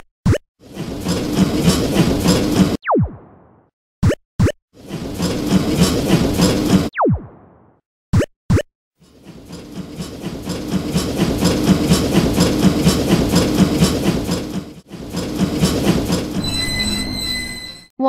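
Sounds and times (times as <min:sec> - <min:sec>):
train wheels clickety-clack: 0:00.7 - 0:02.8, 0:04.8 - 0:06.9, 0:09.0 - 0:17.0.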